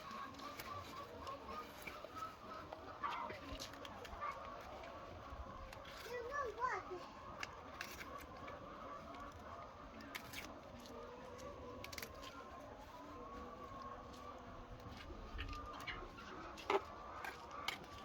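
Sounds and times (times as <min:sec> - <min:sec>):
hens calling: 0:00.0 - 0:18.0.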